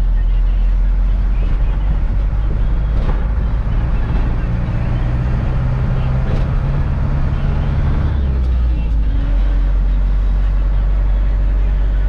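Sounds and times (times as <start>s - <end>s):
road noise: 0.0s - 12.0s
truck engine drone: 0.0s - 12.0s.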